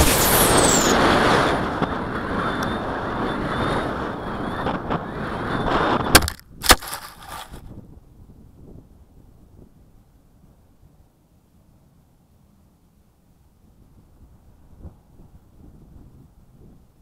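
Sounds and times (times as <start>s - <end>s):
wind rushing over microphone: 0.0s - 11.0s, 13.8s - 17.0s
sharp knocks on ground: 6.2s - 7.6s.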